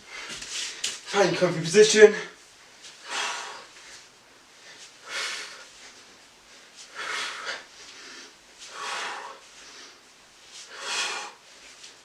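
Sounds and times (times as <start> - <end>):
man breathing hard: 3.0 - 12.0.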